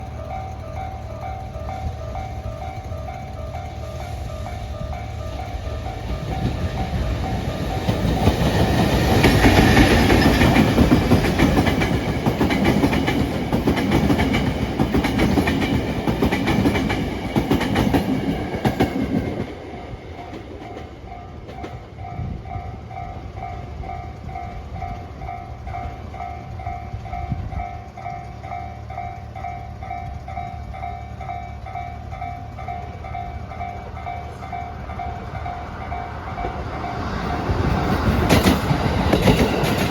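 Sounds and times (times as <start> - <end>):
level-crossing bell dinging: 0.0 - 8.9
train rumbling past: 0.0 - 39.9
wheels clacking over rail joints: 0.0 - 39.9.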